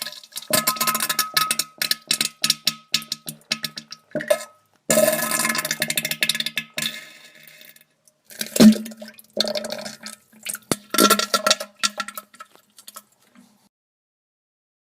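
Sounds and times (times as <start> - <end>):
small crackles: 10.4 - 13.7
wet sputtering fart splatters: 10.6 - 13.0.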